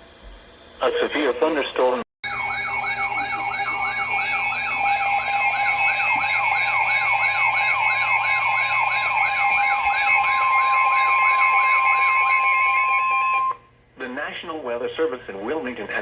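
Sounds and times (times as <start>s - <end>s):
steady alarm tone: 0.2s - 13.7s
high warbling tones: 0.8s - 13.6s
electronic siren sweeping rapidly: 2.2s - 13.6s.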